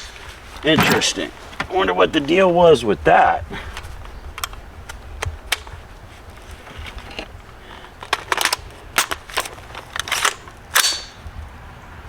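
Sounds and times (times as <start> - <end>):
rifle being handled metallic clicks: 8.0 - 11.2.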